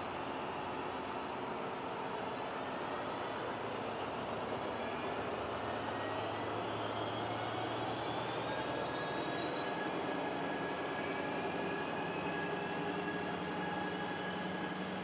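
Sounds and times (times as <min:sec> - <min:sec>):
train whine rising in pitch: 0:00.0 - 0:15.0.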